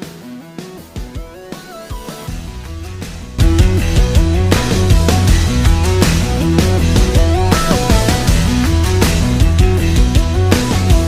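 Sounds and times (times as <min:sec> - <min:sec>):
kick drum beat: 0:01.0 - 0:11.0
plucked guitar notes: 0:02.4 - 0:10.4.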